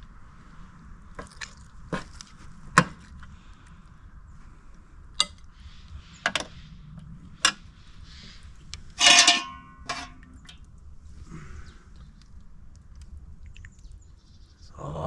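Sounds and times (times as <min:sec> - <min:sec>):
metal utensils clinking on pot: 0:09.0 - 0:10.6.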